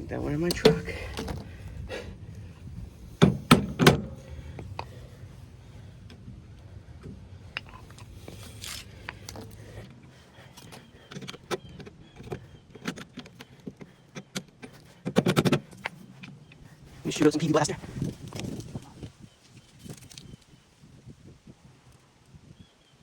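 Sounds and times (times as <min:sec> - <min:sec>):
steady low hum: 0:00.0 - 0:19.4.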